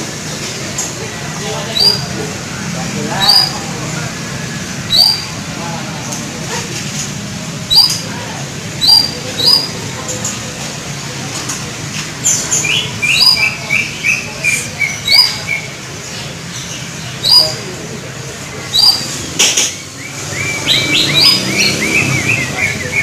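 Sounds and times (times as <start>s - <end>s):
canary chirping: 1.6s - 2.2s, 3.2s - 3.7s, 4.8s - 5.5s, 7.7s - 8.2s, 8.8s - 9.9s, 12.2s - 17.8s, 18.6s - 23.0s
sharp click: 19.4s - 19.8s.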